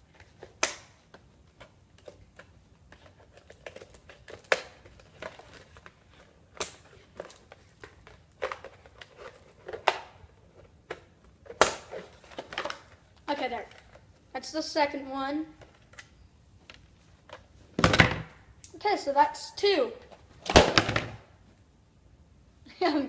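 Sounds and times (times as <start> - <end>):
plastic and cardboard snapping: 0.4 - 1.0.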